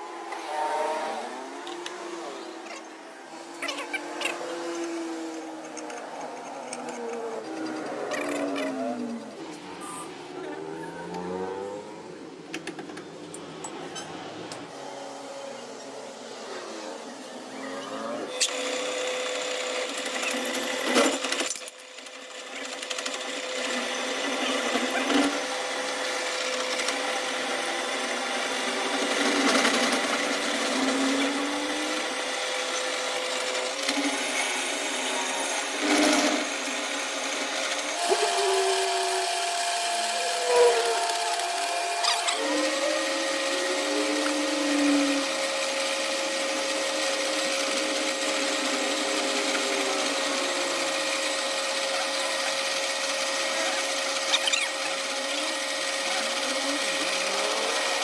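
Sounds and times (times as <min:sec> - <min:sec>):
grinding noise: 0:00.0 - 0:15.0, 0:28.6 - 0:52.4
machine tool whining: 0:00.0 - 0:58.0.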